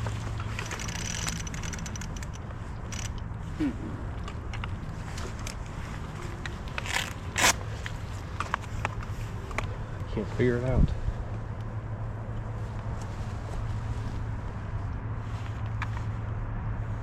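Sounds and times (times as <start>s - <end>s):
rope scraping on winch: 0.0s - 3.2s
low engine hum: 0.0s - 17.0s.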